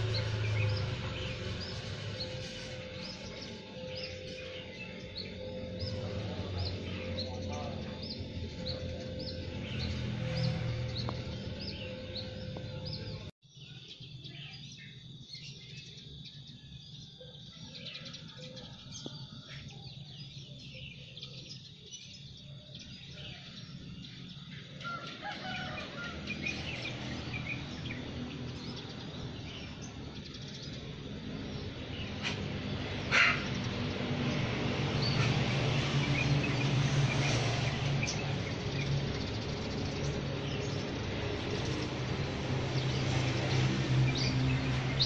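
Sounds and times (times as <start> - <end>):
birds chirping and calling: 0.0 - 45.0.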